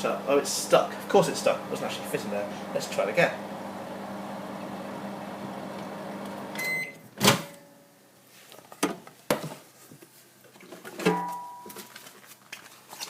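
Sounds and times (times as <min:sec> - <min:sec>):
microwave oven humming: 0:00.0 - 0:07.0
microwave beep: 0:06.5 - 0:07.0.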